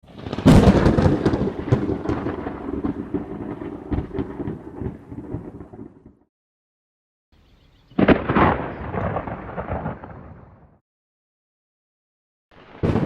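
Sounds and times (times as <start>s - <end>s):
thunderclap with rolling rumble: 0.0s - 6.3s, 8.0s - 10.8s, 12.8s - 13.0s.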